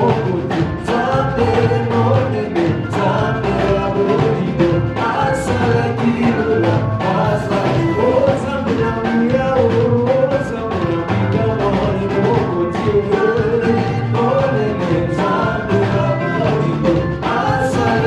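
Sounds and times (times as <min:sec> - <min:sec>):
band with steady drum beat: 0:00.0 - 0:18.0
gospel singing: 0:00.0 - 0:18.0.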